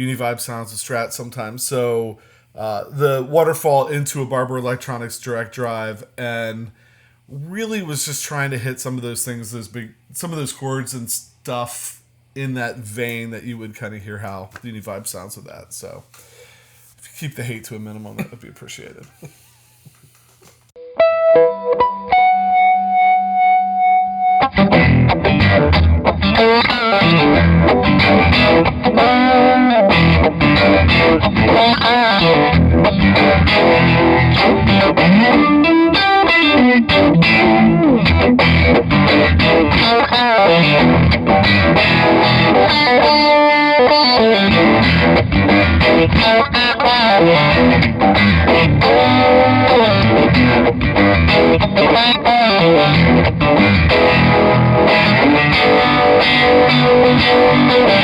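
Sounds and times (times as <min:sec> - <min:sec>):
electric guitar with vibrato: 0:20.8 - 0:58.0.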